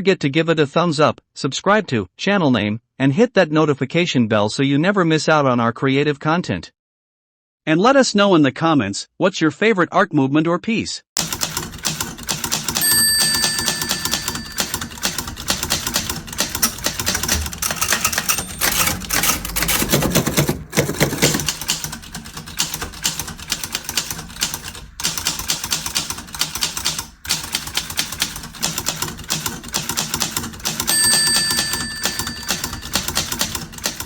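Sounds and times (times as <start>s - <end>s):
typewriter carriage bell: 11.2s - 34.0s
typewriter keystrokes: 11.2s - 34.0s.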